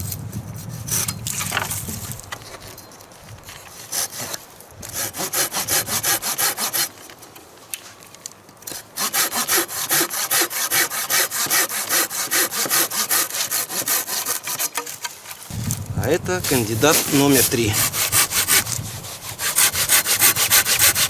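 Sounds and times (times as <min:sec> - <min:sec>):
hand saw cutting wood: 0:03.7 - 0:07.2, 0:08.7 - 0:15.7, 0:16.3 - 0:21.0.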